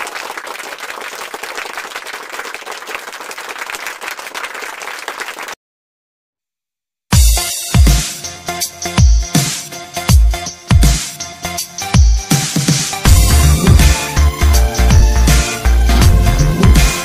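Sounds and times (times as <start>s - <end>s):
crowd clapping: 0.0s - 5.6s
loud electronic music: 7.2s - 17.0s.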